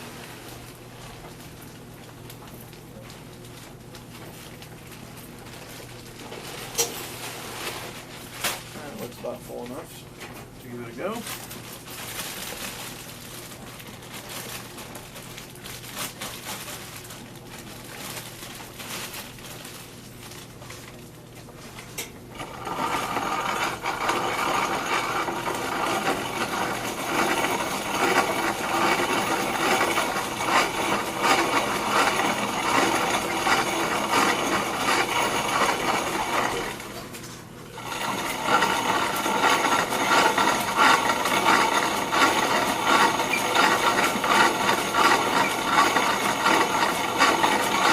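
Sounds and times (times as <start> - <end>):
grain mill grinding: 22.3 - 47.9.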